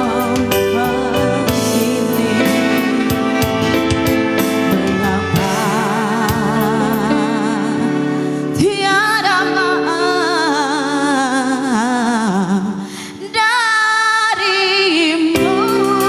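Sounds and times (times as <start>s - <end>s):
band accompaniment: 0.0s - 8.6s, 15.4s - 16.0s.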